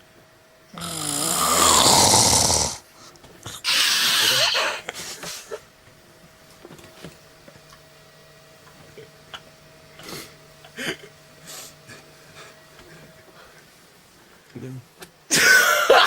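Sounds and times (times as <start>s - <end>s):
person snoring loudly: 0.7s - 2.9s, 3.5s - 4.8s.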